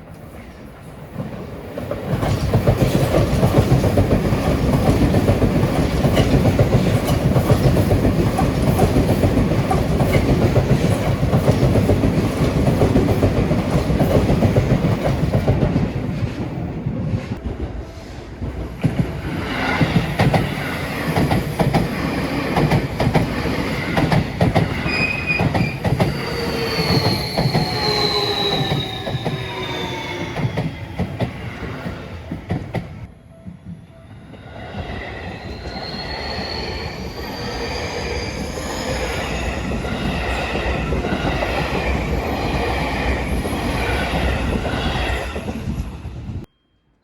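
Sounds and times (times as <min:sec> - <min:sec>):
train wheels clattering on rails: 0:01.1 - 0:16.6, 0:18.4 - 0:29.5.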